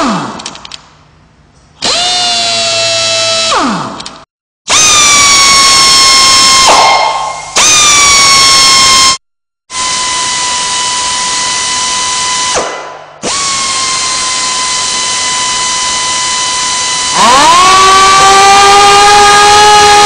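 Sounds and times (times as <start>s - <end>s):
air tool whining: 4.7s - 6.9s, 7.5s - 20.0s.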